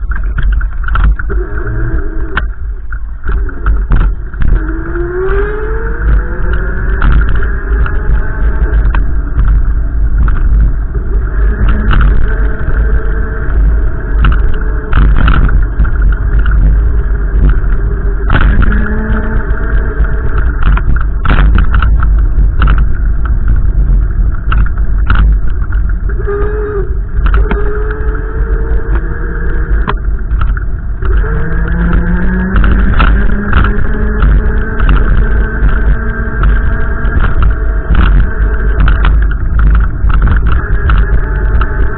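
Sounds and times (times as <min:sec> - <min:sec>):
car engine running: 0:00.0 - 0:41.9
wind buffeting microphone: 0:00.0 - 0:41.9.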